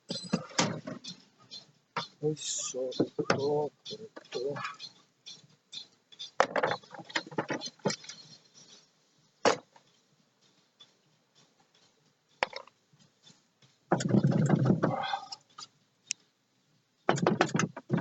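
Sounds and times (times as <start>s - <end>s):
tools clattering and knocking: 0.1s - 1.1s, 6.4s - 8.2s, 17.1s - 18.0s.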